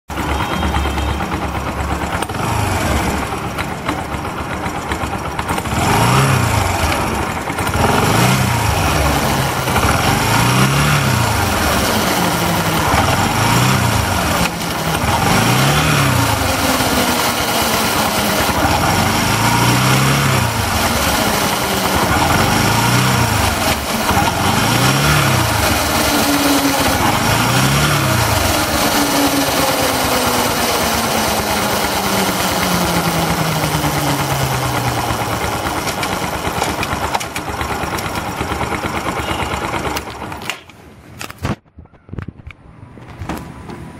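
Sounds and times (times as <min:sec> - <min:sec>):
motorcycle engine revving: 0:00.0 - 0:40.5.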